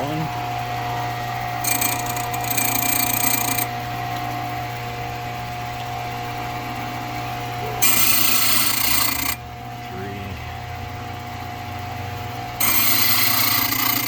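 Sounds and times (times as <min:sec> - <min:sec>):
key-cutting machine motor hum: 0:00.0 - 0:14.0
cutter grinding key blank: 0:01.5 - 0:03.8, 0:07.8 - 0:09.4, 0:12.5 - 0:14.0.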